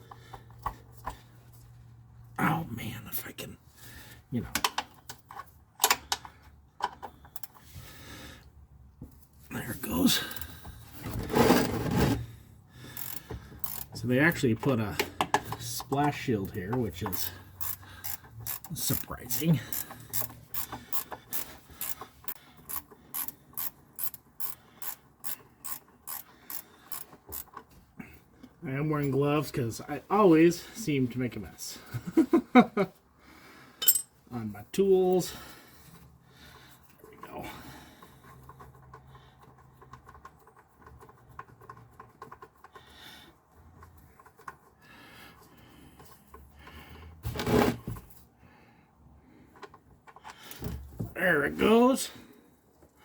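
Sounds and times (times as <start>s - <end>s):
ratchet wrench clicking: 13.0s - 27.6s.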